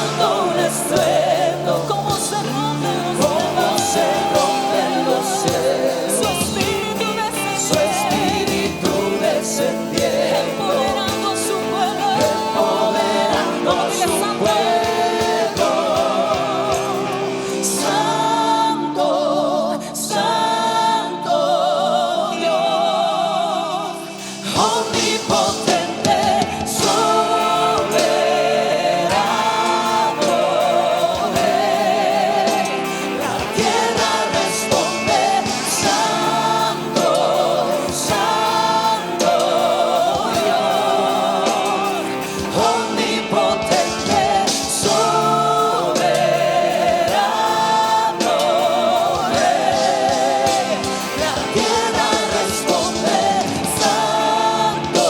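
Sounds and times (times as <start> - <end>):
singers holding long notes: 0.0 - 55.0
worship band playing: 0.0 - 55.0.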